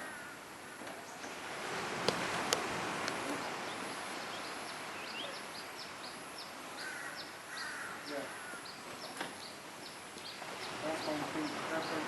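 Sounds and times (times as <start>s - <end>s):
bird chirping: 3.4s - 12.0s.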